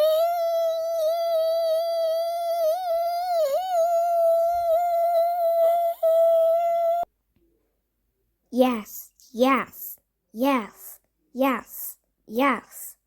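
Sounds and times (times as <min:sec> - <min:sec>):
person humming: 0:00.0 - 0:07.1.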